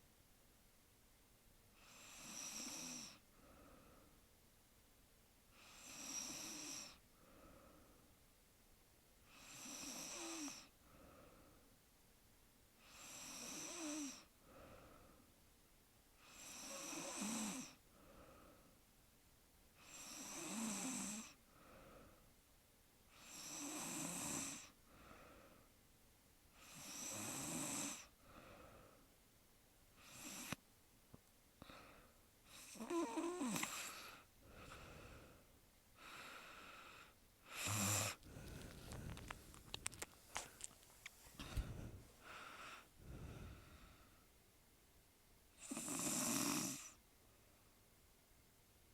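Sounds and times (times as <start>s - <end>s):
woman snoring: 1.8s - 3.2s, 5.6s - 7.0s, 9.3s - 10.7s, 12.8s - 14.3s, 16.2s - 17.8s, 19.8s - 21.4s, 23.2s - 24.8s, 26.6s - 28.1s, 32.5s - 35.0s, 37.5s - 39.2s, 45.6s - 47.0s
soft breath: 3.1s - 4.3s, 6.9s - 8.2s, 10.6s - 11.8s, 14.2s - 15.4s, 17.8s - 18.9s, 21.3s - 22.4s, 24.7s - 25.8s, 28.0s - 29.2s, 31.6s - 44.4s.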